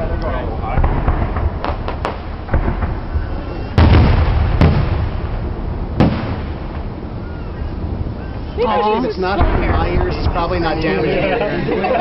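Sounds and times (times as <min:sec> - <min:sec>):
low rumble of echo: 0:00.0 - 0:10.9
fireworks bangs: 0:00.0 - 0:12.0
small firework cracks: 0:00.2 - 0:05.4, 0:06.0 - 0:06.9.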